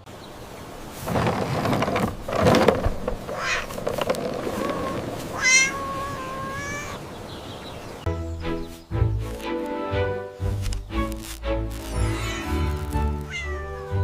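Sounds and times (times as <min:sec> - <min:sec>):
cat meowing: 0:03.4 - 0:03.7, 0:04.4 - 0:07.0, 0:13.2 - 0:14.0
background music: 0:08.1 - 0:14.0.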